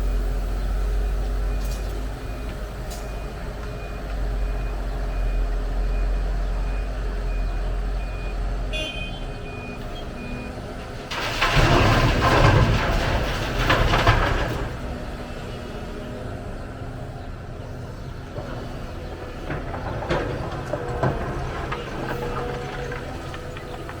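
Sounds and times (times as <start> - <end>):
heavy diesel machinery running: 0.0 - 24.0
reversing alarm beeping: 1.4 - 10.6
dirt dumped into truck bed: 11.0 - 15.1, 18.6 - 24.0.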